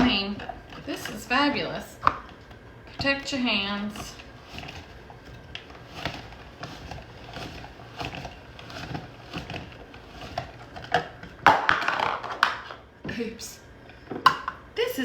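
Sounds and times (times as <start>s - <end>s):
cheese grater scraping cheese: 3.0s - 11.0s
grater clatter: 3.0s - 11.1s.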